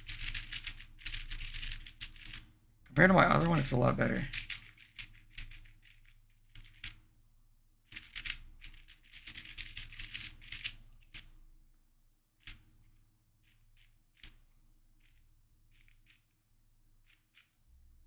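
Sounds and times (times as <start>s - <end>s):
puzzle cube clicking: 3.0s - 4.3s.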